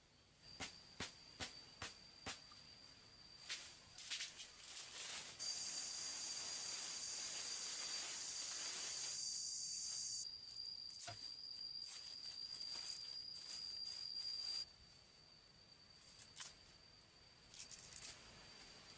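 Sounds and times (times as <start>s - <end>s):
insects chirring: 0.0s - 18.9s
high hissing buzz: 5.0s - 14.6s.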